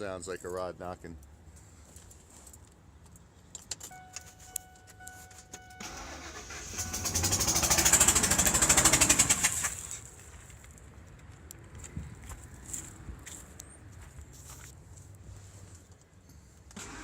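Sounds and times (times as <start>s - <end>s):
car starter cranking engine: 5.4s - 10.0s, 16.8s - 17.0s.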